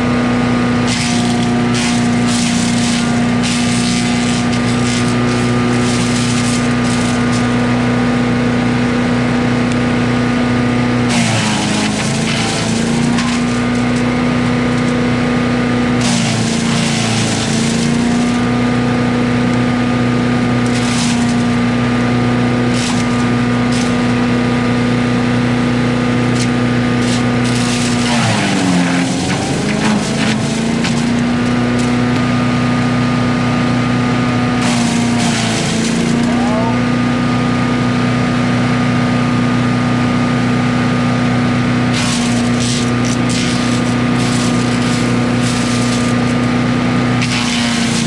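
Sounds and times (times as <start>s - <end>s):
wood chipper engine running: 0.0s - 48.0s
wood being chipped crackling: 0.8s - 7.9s, 11.1s - 15.1s, 15.9s - 18.6s, 20.4s - 32.5s, 34.6s - 36.7s, 41.8s - 48.0s.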